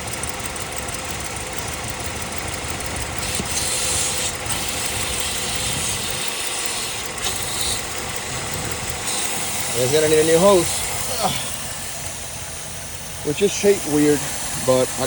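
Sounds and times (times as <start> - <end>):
truck engine idling: 0.0 - 15.0
high hiss of vacuum leak: 3.2 - 15.0.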